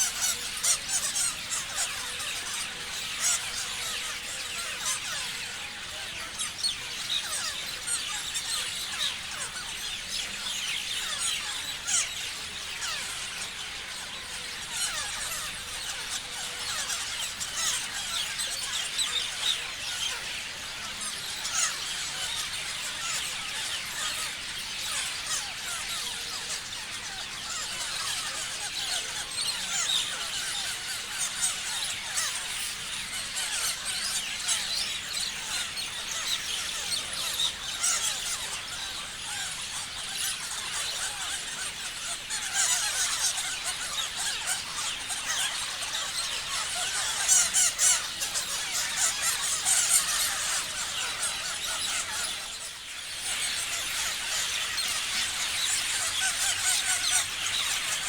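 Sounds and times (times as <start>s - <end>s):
parrots chirping and squealing: 0.0s - 58.0s
loud parrot screeches: 37.7s - 52.4s.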